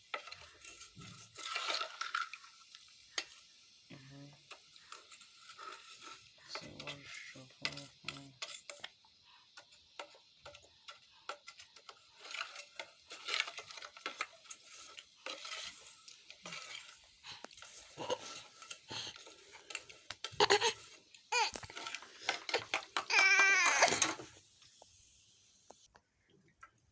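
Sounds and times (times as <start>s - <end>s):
clicks and clatter of small objects: 4.4s - 24.9s.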